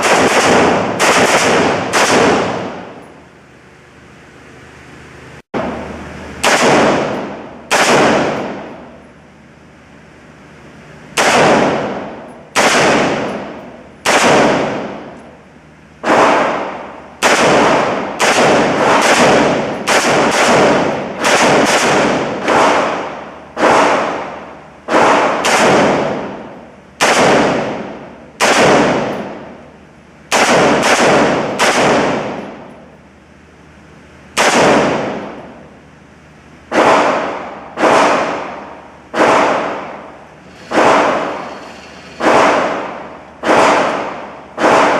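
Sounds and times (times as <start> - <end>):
gunshots with echo: 0.0 - 3.0, 5.6 - 9.0, 11.1 - 15.2, 16.0 - 29.6, 30.3 - 32.7, 34.4 - 35.6, 36.7 - 44.9.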